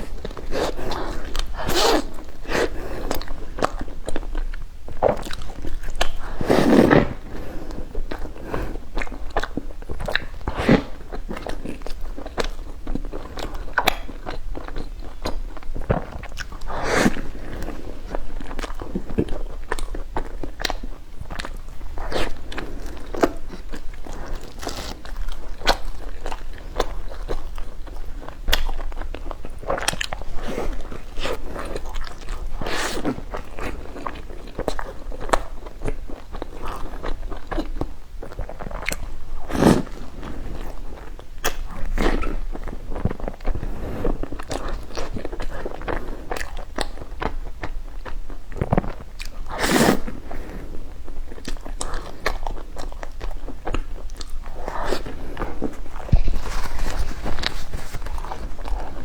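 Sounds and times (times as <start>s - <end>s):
chewing with crackling clicks: 18.1s - 32.5s.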